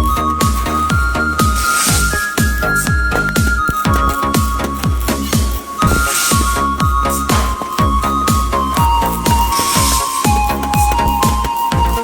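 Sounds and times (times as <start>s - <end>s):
electronic dance music: 0.3s - 12.0s
steady kick drum: 2.4s - 12.0s.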